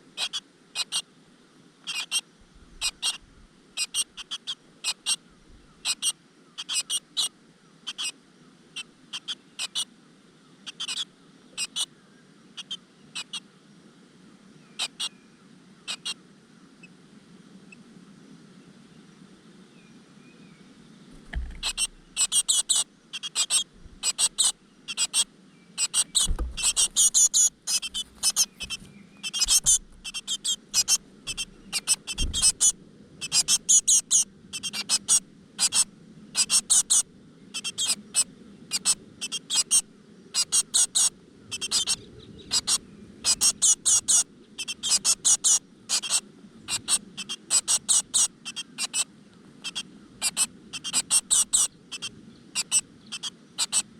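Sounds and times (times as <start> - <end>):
nestlings begging calls: 0.2 - 1.0, 1.9 - 2.2, 2.8 - 3.2, 3.8 - 5.2, 5.8 - 7.3, 7.9 - 8.1, 8.8 - 9.9, 10.6 - 11.9, 21.2 - 53.9
low thumps: 21.2 - 22.2, 26.2 - 32.8.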